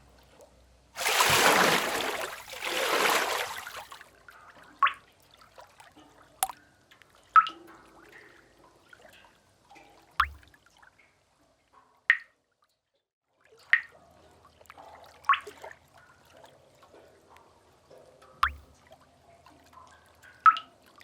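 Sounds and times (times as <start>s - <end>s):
faint moving water: 0.0s - 12.3s, 13.3s - 21.0s
water drops plinking into pool: 6.4s - 8.3s, 9.8s - 10.6s, 12.1s - 12.4s, 13.6s - 14.0s, 18.4s - 19.0s, 19.8s - 20.8s.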